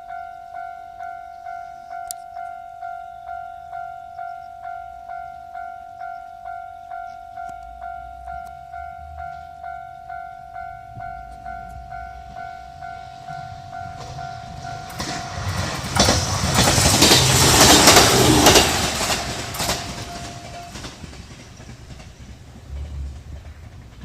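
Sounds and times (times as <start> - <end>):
level crossing alarm bell ringing: 0.0 - 21.0
train passing: 0.0 - 24.0
train wheel clatter: 11.0 - 24.0.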